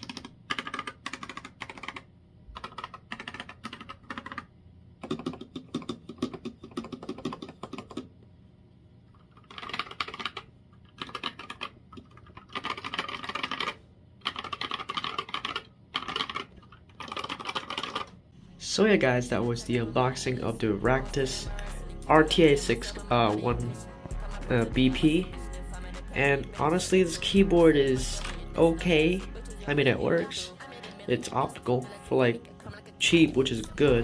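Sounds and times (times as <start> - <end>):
mechanical keyboard typing: 0.0 - 8.1, 9.2 - 18.2, 26.3 - 29.3.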